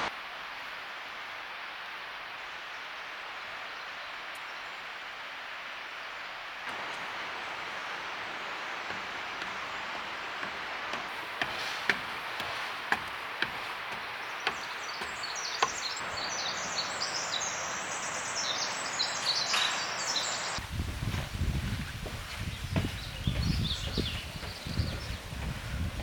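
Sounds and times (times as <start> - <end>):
rushing water: 0.0 - 26.0
footsteps on wooden boardwalk: 6.7 - 17.3, 20.2 - 26.0
small bird chirping: 14.2 - 20.6, 21.8 - 25.5.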